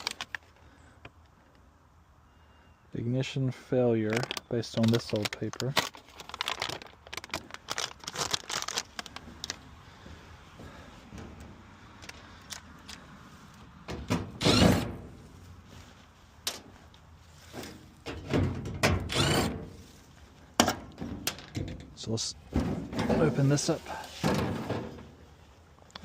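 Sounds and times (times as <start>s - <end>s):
sheet metal scraping and thudding: 13.8s - 15.2s, 17.5s - 19.8s, 20.6s - 23.5s, 24.2s - 25.2s.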